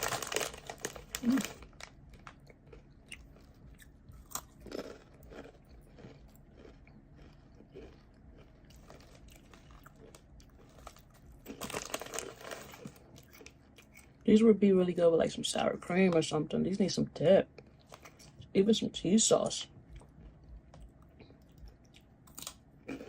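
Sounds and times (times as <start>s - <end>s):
crunching tortilla chips: 0.0s - 14.2s, 20.0s - 23.0s.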